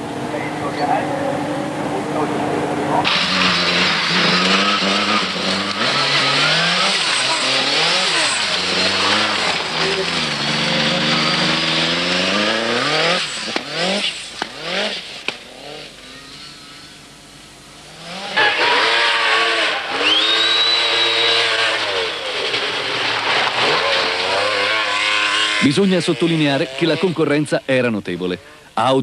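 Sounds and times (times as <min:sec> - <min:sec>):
rally car revving: 0:00.0 - 0:16.9, 0:17.6 - 0:27.3
high engine whine: 0:00.0 - 0:29.0
rally car passing loud: 0:00.2 - 0:15.9, 0:17.9 - 0:27.1.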